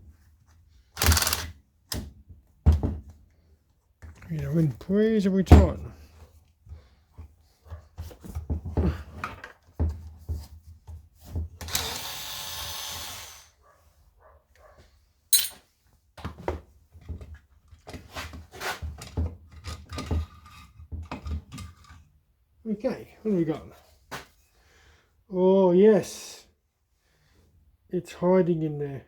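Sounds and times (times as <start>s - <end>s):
metal parts knocking and clicking: 15.4s - 15.6s.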